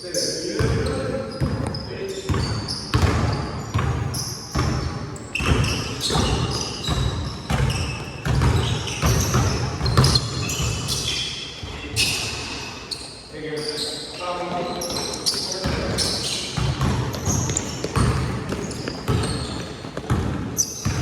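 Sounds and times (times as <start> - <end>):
sneakers squeaking on court: 0.1 - 21.0
basketball bouncing: 0.6 - 10.9, 16.6 - 21.0.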